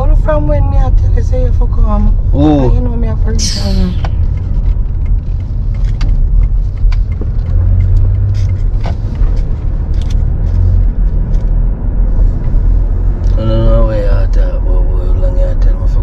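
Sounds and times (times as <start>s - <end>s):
deep steady drone: 0.0s - 8.6s
car engine rumbling: 0.0s - 16.0s.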